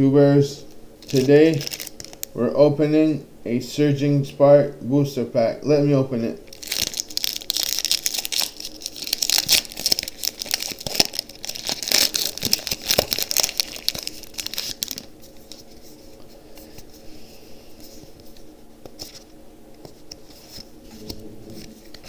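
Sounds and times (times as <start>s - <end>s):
foil wrapper crinkling and tearing: 1.0s - 2.4s, 6.5s - 15.8s.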